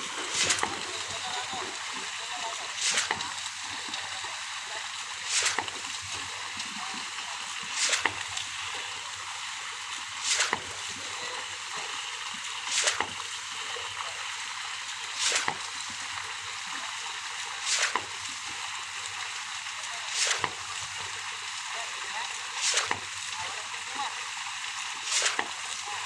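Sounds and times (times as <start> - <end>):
steady hiss: 0.0 - 10.8
wet concrete surging and splashing: 0.0 - 26.0.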